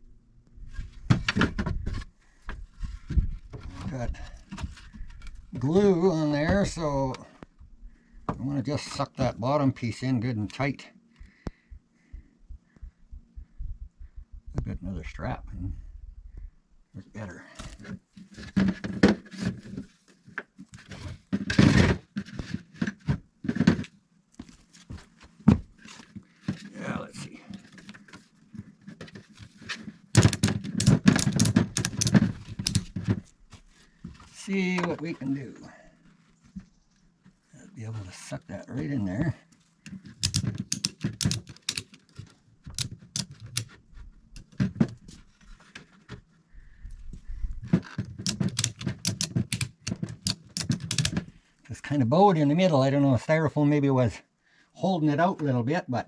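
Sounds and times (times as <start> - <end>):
hands scraping and knocking materials: 27.6 - 35.2, 39.9 - 46.3, 47.1 - 51.3
ratchet strap clicking: 30.2 - 33.0, 40.2 - 43.7, 47.8 - 51.2.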